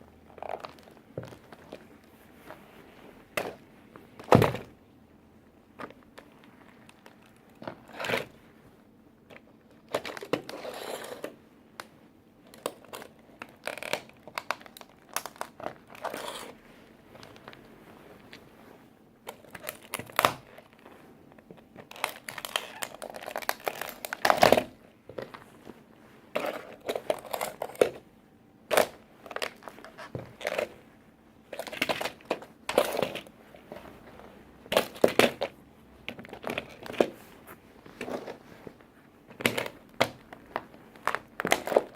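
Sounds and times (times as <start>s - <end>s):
plastic toy crunching and cracking: 12.5s - 16.6s, 19.3s - 20.7s, 21.8s - 25.4s, 26.4s - 28.0s, 28.7s - 30.7s, 31.5s - 33.3s, 34.7s - 35.5s, 39.3s - 41.9s.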